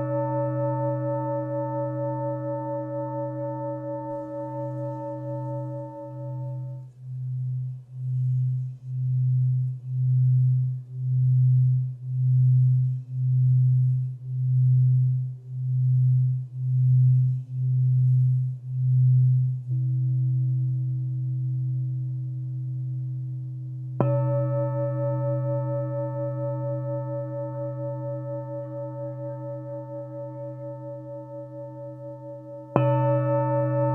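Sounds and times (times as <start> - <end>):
higher singing bowl struck: 0.0 - 6.9, 24.0 - 33.9
singing bowl low hum: 0.0 - 33.9.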